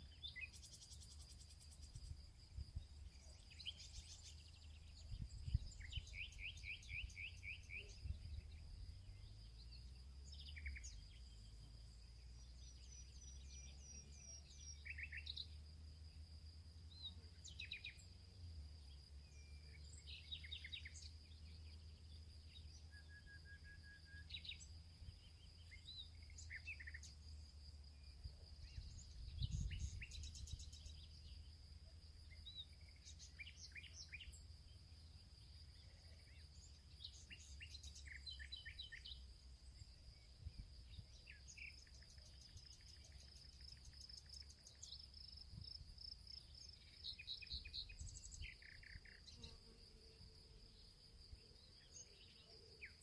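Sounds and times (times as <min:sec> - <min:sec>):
songbirds chirping and trilling: 0:00.0 - 0:53.0
high insect drone: 0:24.3 - 0:53.0.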